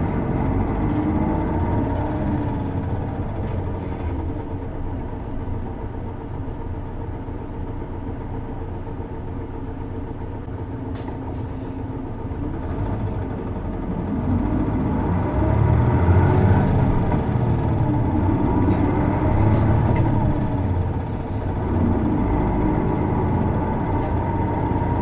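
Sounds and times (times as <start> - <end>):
bus diesel engine while driving: 0.0 - 25.0.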